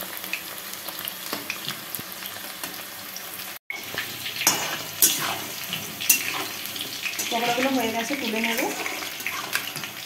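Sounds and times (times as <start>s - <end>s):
food frying in hot oil: 0.0s - 10.0s.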